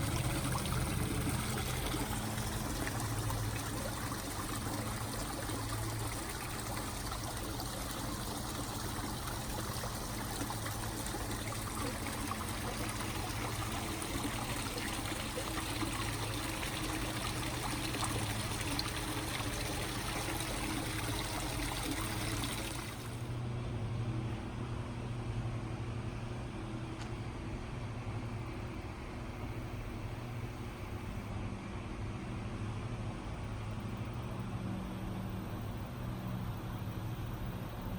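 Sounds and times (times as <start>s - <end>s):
water trickling and splashing: 0.0s - 23.3s
steady low hum: 0.0s - 37.9s.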